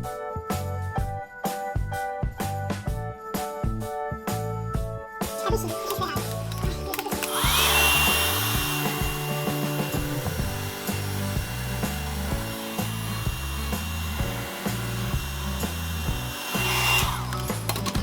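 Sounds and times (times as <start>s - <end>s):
background music with bass line: 0.0s - 18.0s
small electric motor whine: 5.7s - 18.0s.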